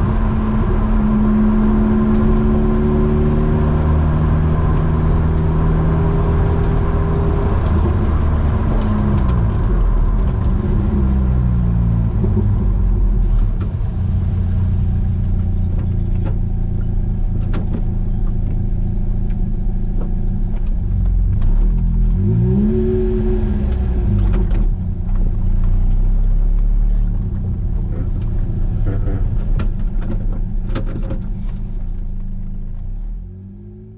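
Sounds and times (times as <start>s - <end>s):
car engine revving while driving: 0.0s - 31.4s, 32.8s - 33.9s.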